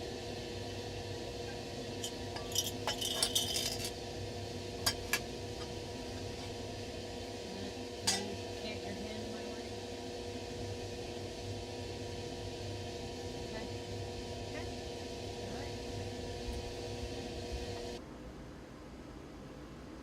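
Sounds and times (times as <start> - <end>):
room equipment hum: 0.0 - 20.0
clinks of small hard objects: 2.0 - 4.0.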